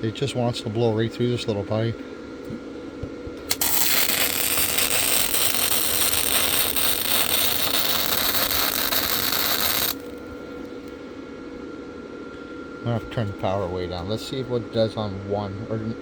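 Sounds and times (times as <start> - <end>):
welder arc crackling: 3.4 - 10.2.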